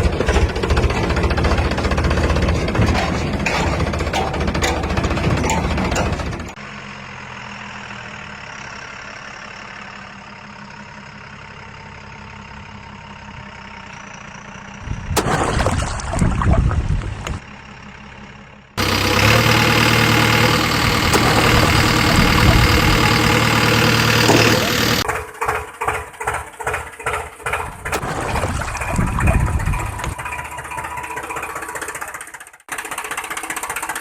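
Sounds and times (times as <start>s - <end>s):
loud knocks and rumbling: 0.0s - 6.6s, 15.0s - 17.4s, 20.1s - 25.0s, 27.1s - 31.5s
heavy diesel engine idling: 0.0s - 15.8s, 16.9s - 34.0s
engine running hard: 0.0s - 32.6s.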